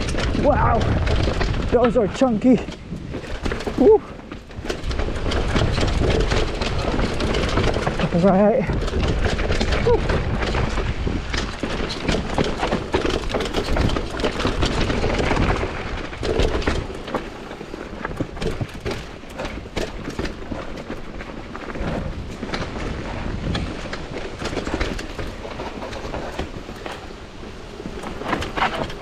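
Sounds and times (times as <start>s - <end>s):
heavy low rumble: 0.0s - 18.7s
bike clattering: 0.0s - 29.0s
tyres on rock: 0.0s - 29.0s.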